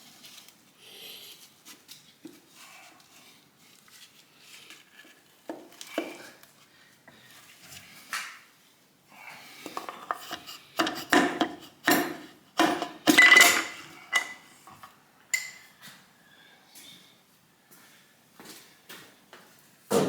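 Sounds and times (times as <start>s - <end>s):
metal parts and tools clattering: 9.8s - 15.6s.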